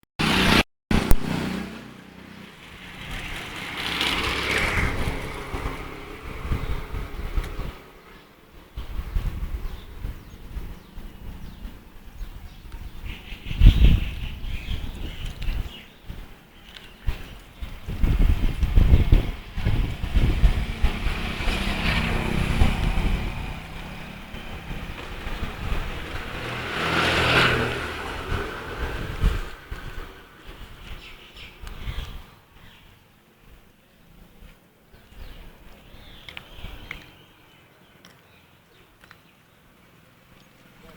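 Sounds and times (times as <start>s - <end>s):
vehicle passing: 0.2s - 8.0s, 19.1s - 30.7s
passing traffic noise: 0.2s - 40.9s
low engine hum: 15.0s - 30.8s.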